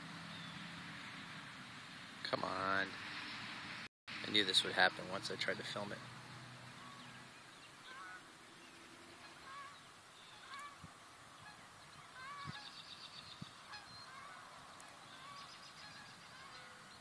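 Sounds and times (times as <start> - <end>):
faint bird calls: 6.6 - 17.0.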